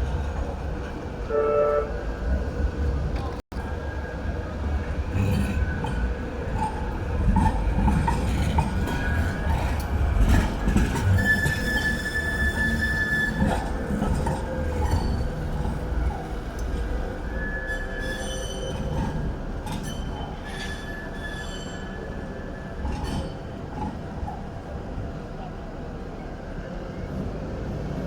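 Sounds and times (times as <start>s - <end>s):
tram rumbling on rails: 0.0s - 28.0s
high wheel squeal: 11.0s - 14.0s, 17.2s - 23.4s.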